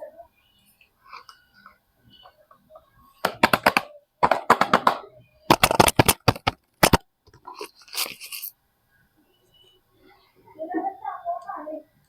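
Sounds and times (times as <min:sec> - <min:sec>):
packaging crinkling and tearing: 0:05.5 - 0:07.0.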